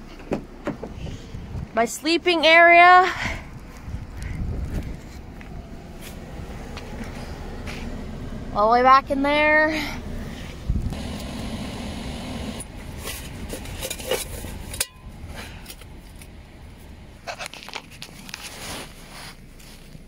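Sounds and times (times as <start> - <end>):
wind noise rumble: 0.8 - 2.0, 3.1 - 8.6, 9.8 - 18.0
handling and rustling: 12.8 - 20.0.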